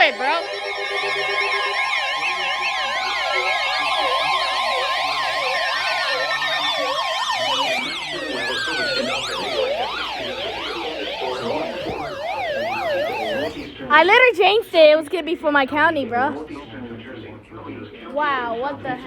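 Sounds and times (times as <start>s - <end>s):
siren yelps: 0.0s - 13.7s
falling siren tones: 0.0s - 13.8s.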